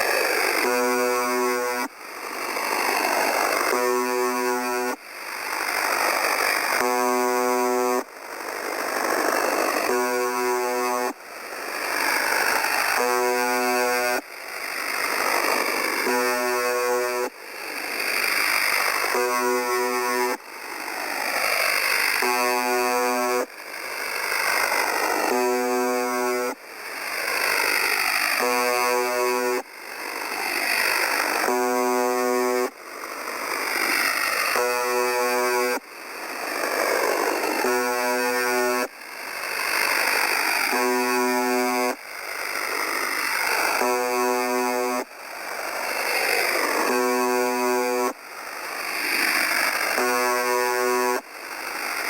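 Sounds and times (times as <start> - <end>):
low monotone radio buzzes: 0.0 - 52.0
shortwave static hiss: 1.4 - 26.0, 41.4 - 52.0.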